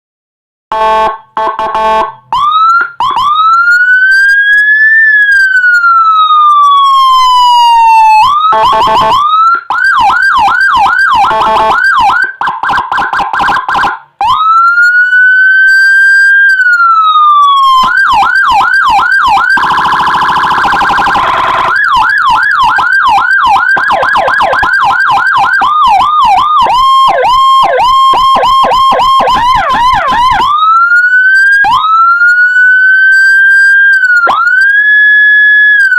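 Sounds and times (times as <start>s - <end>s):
electronic police siren: 0.8s - 35.9s.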